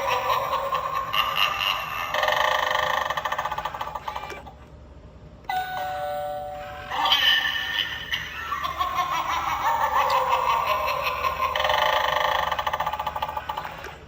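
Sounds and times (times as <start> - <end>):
two-note doorbell chime: 5.5 - 7.2.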